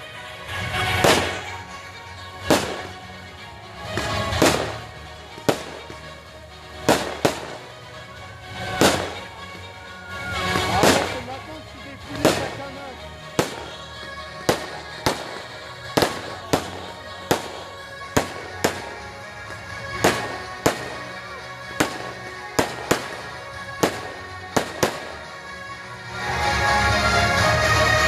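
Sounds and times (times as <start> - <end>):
fireworks bangs: 0.0 - 25.4
music playing: 0.0 - 28.0.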